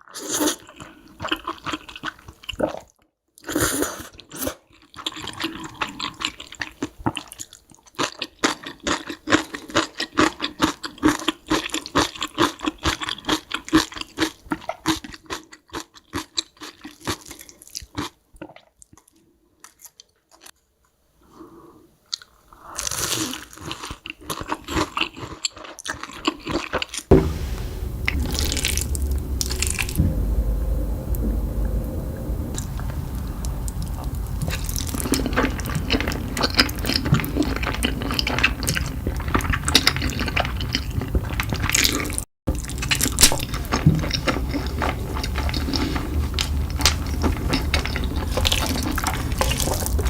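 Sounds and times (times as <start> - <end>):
chewing and crunching food: 0.0 - 20.7, 22.0 - 27.1, 32.5 - 50.0
steady low hum: 27.1 - 40.6, 42.5 - 50.0.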